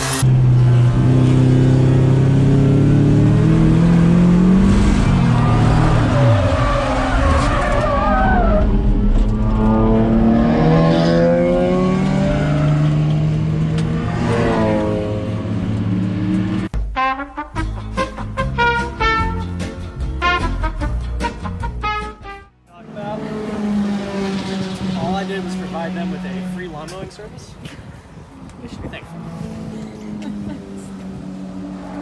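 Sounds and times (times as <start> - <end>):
race car engine revving: 0.0 - 16.7, 22.8 - 27.3, 28.9 - 32.0
tyre squealing: 5.0 - 9.4.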